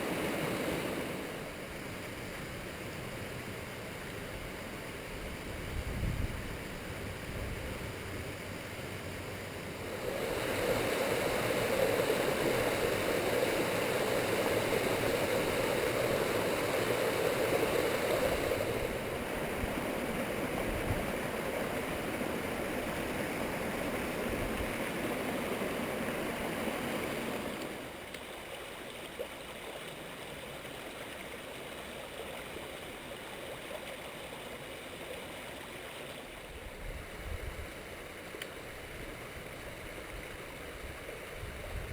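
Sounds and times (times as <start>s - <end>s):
stream water rushing: 0.0s - 41.9s.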